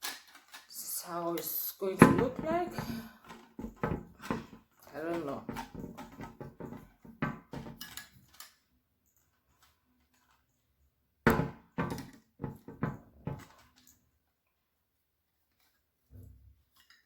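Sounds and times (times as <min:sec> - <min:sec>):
hard knocks of parts handled: 0:02.0 - 0:08.1, 0:11.3 - 0:13.6.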